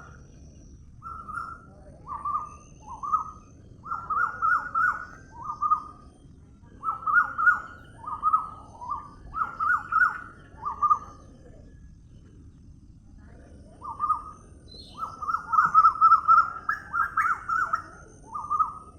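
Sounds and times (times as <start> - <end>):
bird calling: 1.0 - 6.1, 6.7 - 11.4, 13.8 - 18.9.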